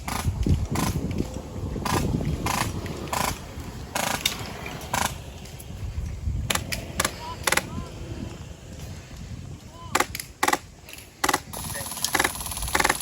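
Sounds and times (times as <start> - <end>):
airsoft guns firing bursts: 9.9 - 13.0.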